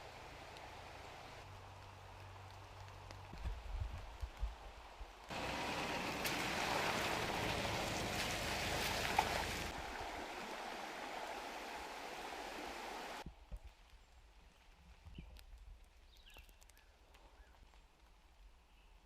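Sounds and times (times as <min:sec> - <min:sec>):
creek water rushing: 0:05.3 - 0:13.2.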